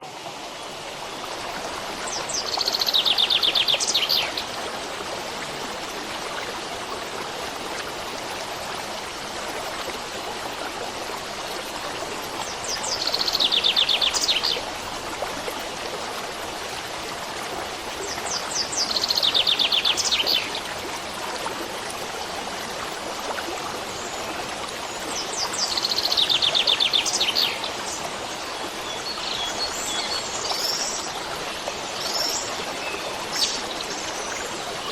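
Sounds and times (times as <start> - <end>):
stream of running water: 0.0 - 34.9.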